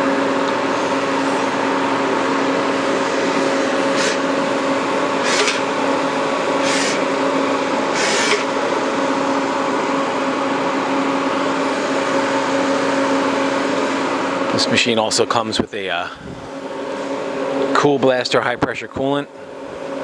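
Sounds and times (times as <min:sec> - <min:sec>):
lathe humming: 0:00.0 - 0:15.4
short hissing bursts: 0:03.9 - 0:04.2, 0:05.2 - 0:05.6, 0:06.6 - 0:07.0, 0:07.9 - 0:08.5.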